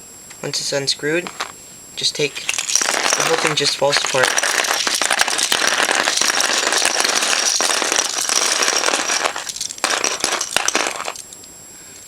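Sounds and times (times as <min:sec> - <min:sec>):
plastic puzzle pieces clattering: 0:01.2 - 0:01.5, 0:02.2 - 0:11.4.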